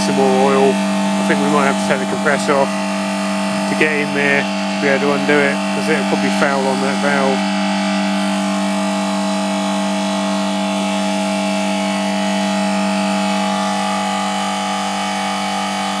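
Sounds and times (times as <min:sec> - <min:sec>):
compressor motor hum: 0:00.0 - 0:16.0.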